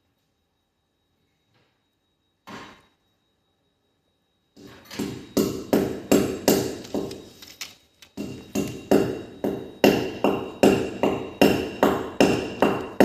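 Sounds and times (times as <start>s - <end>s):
sharp ringing strikes: 4.6s - 7.3s, 8.2s - 13.0s.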